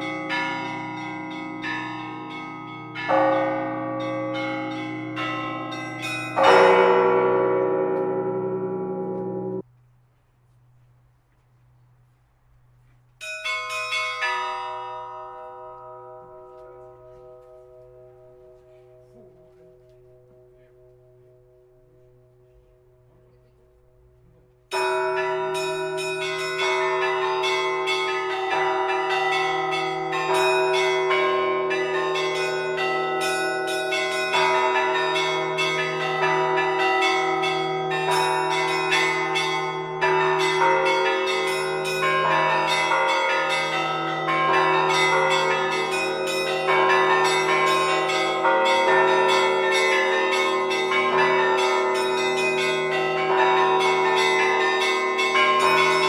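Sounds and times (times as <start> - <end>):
church bells pealing: 0.0 - 9.7, 13.2 - 56.0.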